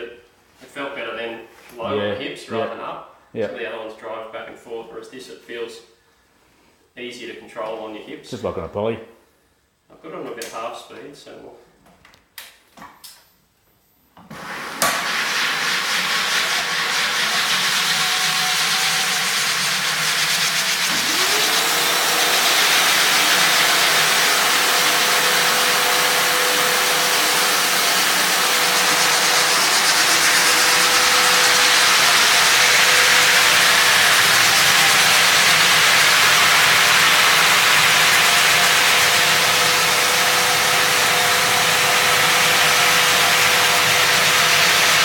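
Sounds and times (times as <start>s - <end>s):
floor sander grinding: 14.3s - 45.0s
sander whine: 14.3s - 45.0s.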